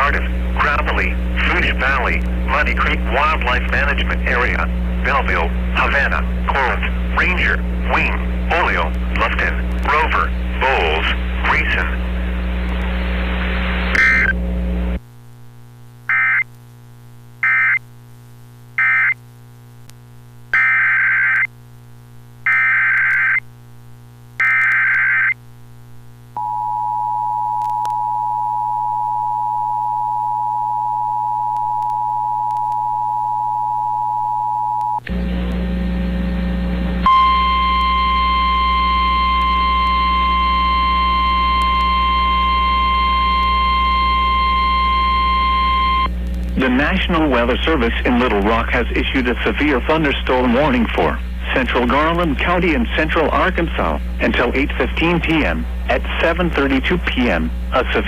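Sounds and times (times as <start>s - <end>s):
hissy weather radio feed: 0.0s - 14.4s, 45.6s - 58.0s
steady single-pitch alarm tone: 17.4s - 17.8s, 18.8s - 19.2s, 20.6s - 21.5s, 22.5s - 23.4s, 24.4s - 25.4s, 26.4s - 35.0s, 37.0s - 46.1s
two-tone attention signal: 37.1s - 46.1s.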